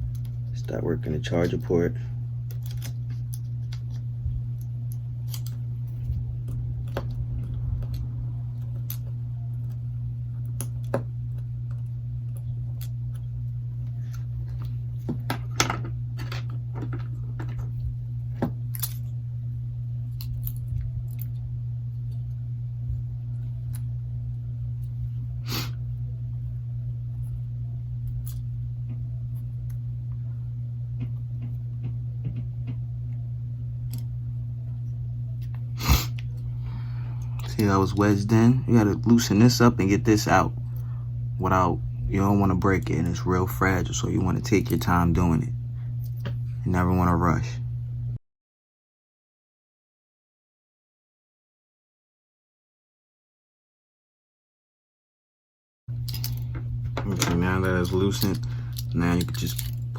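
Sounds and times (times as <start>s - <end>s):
low hum: 0.0s - 48.2s, 55.9s - 59.9s
tools clicking and scraping: 56.0s - 59.9s.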